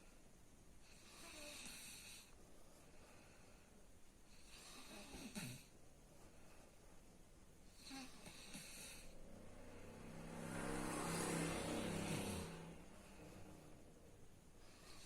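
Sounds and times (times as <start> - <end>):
person snoring: 7.8 - 13.8.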